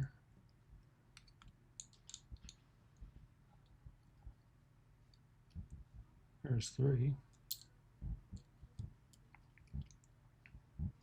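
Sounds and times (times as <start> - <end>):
small metallic tweezer clicks: 1.2 - 2.6.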